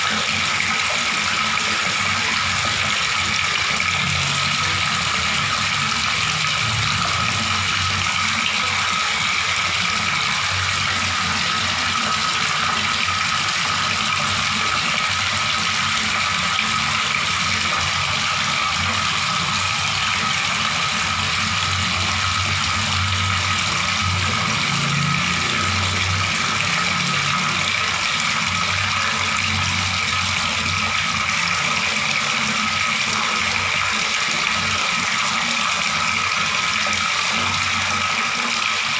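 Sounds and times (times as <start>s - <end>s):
water running from a tap: 0.0s - 38.9s.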